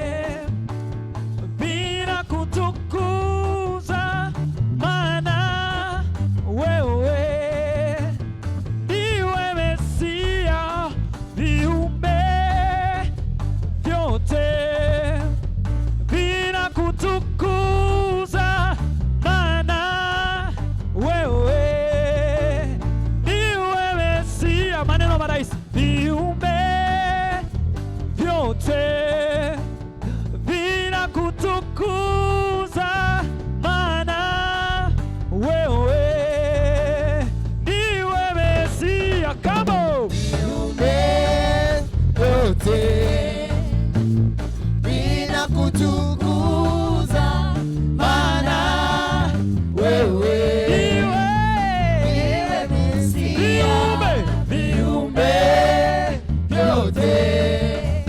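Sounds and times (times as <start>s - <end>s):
band bass and beat: 0.0s - 58.0s
person singing gospel: 8.9s - 13.2s, 28.2s - 44.0s, 44.8s - 58.0s.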